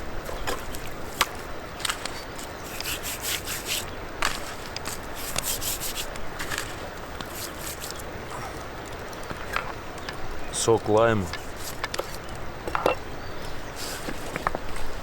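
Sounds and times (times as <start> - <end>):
hands rubbing salt on rough skin: 0.4 - 8.0, 11.3 - 12.2, 13.8 - 15.0.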